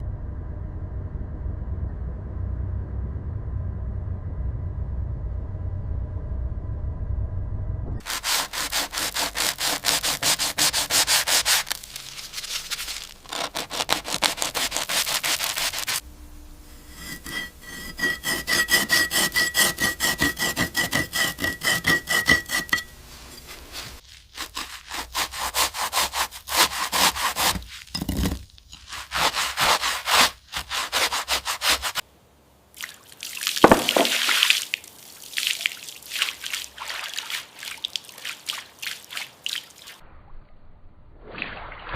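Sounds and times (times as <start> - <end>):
abrasive scrubbing strokes on metal: 8.0 - 16.0, 16.6 - 28.0, 28.6 - 32.0.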